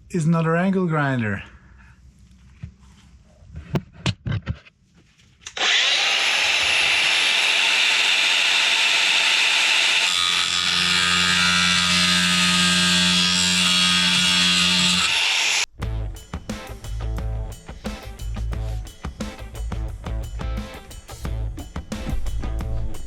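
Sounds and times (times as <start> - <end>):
angle grinder cutting metal: 5.5 - 15.7.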